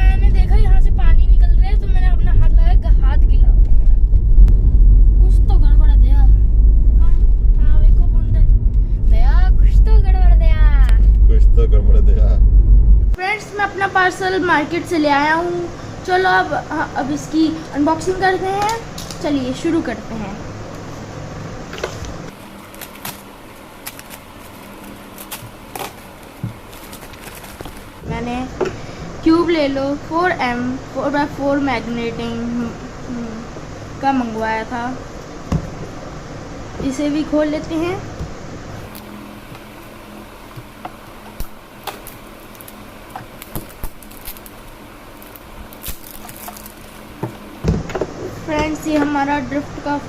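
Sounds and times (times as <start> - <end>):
parcel packaging crinkling: 22.4 - 28.0, 41.9 - 47.2.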